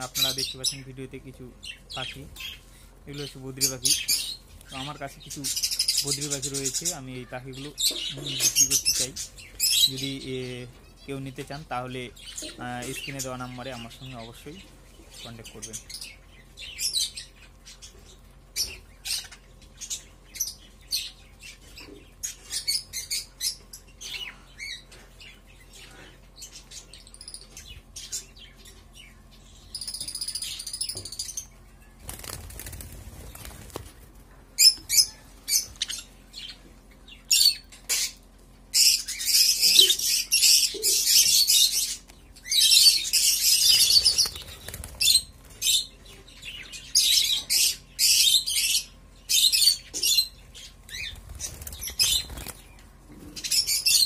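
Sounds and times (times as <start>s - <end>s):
budgerigars chirping: 0.0s - 33.6s, 34.6s - 54.0s
wing flapping: 32.0s - 34.3s, 43.6s - 45.6s, 51.0s - 52.7s.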